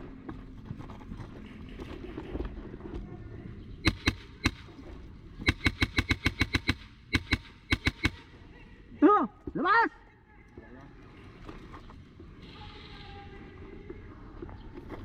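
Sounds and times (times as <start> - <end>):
airsoft guns firing: 3.8 - 4.8, 5.4 - 8.5.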